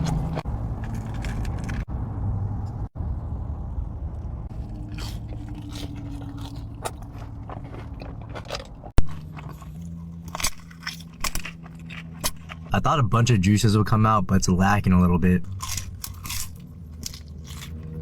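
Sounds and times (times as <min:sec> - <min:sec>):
person chewing crunchy food: 0:00.0 - 0:01.9, 0:04.5 - 0:12.7, 0:15.5 - 0:18.0
low steady hum: 0:00.0 - 0:18.0.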